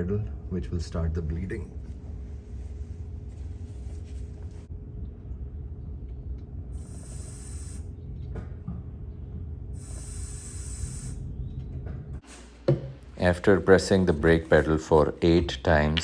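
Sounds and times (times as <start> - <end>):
steady low rumble: 0.0 - 12.2.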